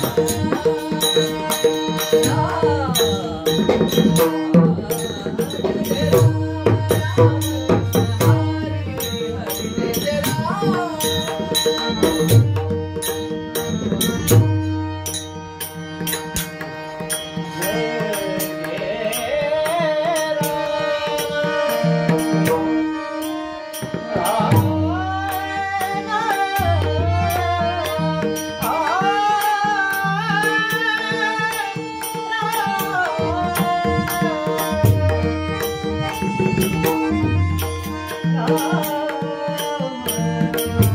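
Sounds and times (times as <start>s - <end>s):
person singing ornamented melody: 17.4s - 23.2s.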